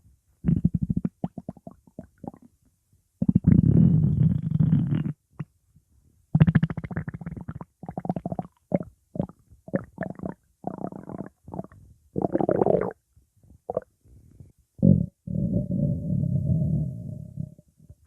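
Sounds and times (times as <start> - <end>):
stomach growling: 6.4 - 13.0, 13.7 - 13.9.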